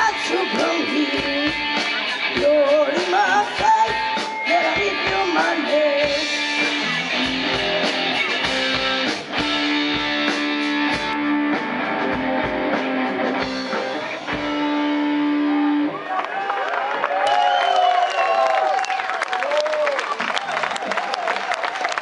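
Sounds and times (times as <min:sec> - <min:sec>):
electric guitar chords: 0:00.0 - 0:16.0
bass guitar: 0:00.0 - 0:16.1.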